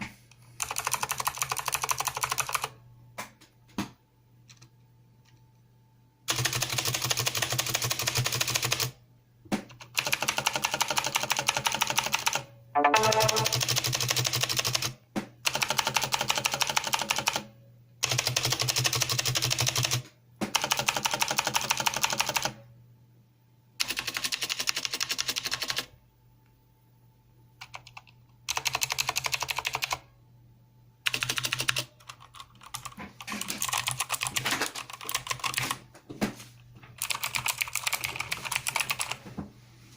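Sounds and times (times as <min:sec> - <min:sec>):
typing on mechanical keyboard: 0:00.6 - 0:02.8, 0:04.5 - 0:04.7, 0:06.3 - 0:09.0, 0:09.7 - 0:12.4, 0:13.0 - 0:22.6, 0:23.8 - 0:25.9, 0:27.6 - 0:30.0, 0:31.1 - 0:35.8, 0:37.0 - 0:39.2.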